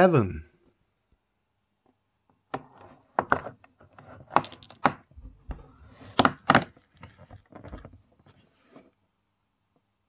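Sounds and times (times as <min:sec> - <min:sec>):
cardboard rustling: 0:03.8 - 0:09.0.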